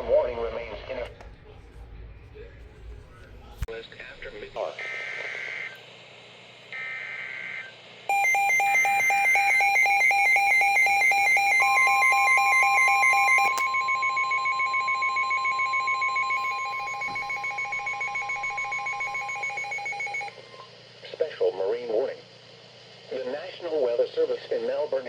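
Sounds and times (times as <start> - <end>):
steady warning alarm tone: 6.8 - 20.4
pulsed alert beeping: 8.1 - 20.3.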